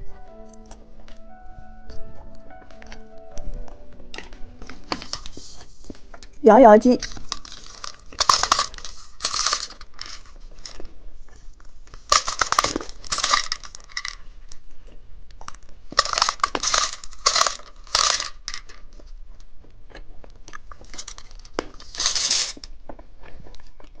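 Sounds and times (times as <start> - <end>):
plastic wrappers crinkling and tearing: 4.6 - 10.9, 11.7 - 14.7, 15.3 - 19.1, 20.5 - 22.8.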